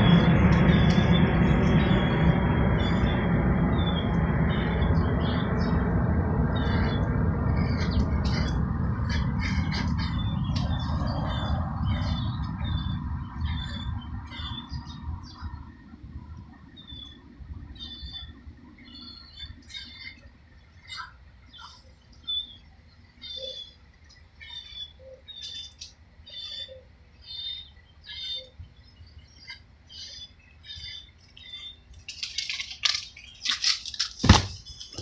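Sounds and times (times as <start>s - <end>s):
passing vehicle rumble: 0.0s - 19.4s
small birds chirping: 0.0s - 33.5s.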